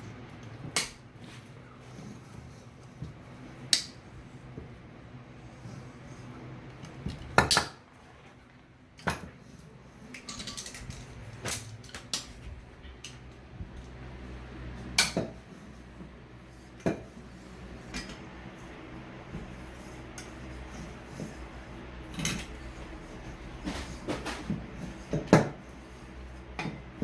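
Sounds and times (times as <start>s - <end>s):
metal tools clinking on metal: 10.2s - 12.0s.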